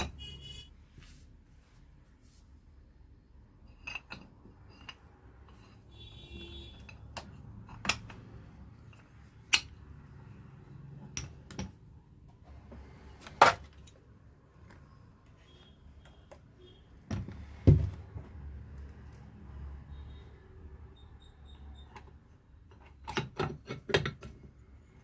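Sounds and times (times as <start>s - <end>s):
metal tools clinking and knocking: 3.6s - 5.8s.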